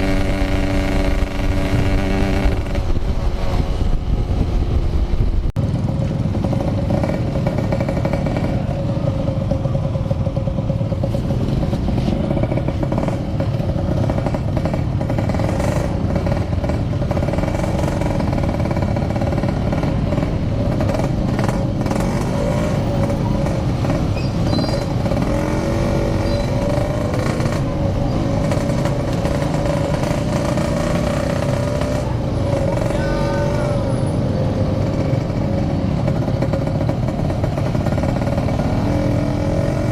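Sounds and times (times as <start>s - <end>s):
wind rumble on microphone: 0.0s - 5.8s
motorcycle engine running: 0.0s - 39.9s.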